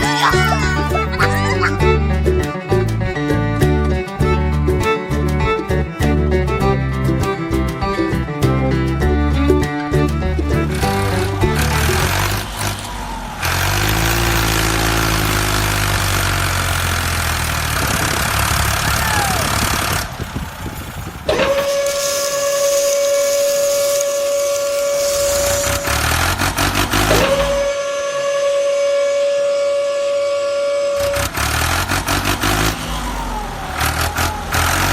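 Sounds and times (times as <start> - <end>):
vehicle engine running: 0.0 - 28.7, 29.9 - 34.9
long steady horn tone: 10.2 - 34.9
loud hissing: 21.6 - 29.4.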